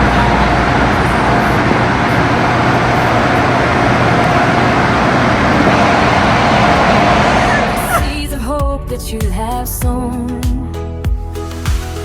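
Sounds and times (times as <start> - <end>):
faint steady whine: 0.0 - 8.5
train running noise: 0.0 - 8.8.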